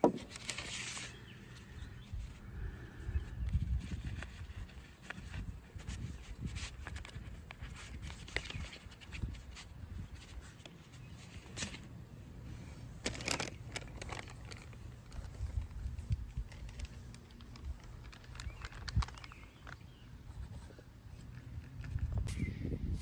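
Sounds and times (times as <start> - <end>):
rustling: 0.0 - 22.2.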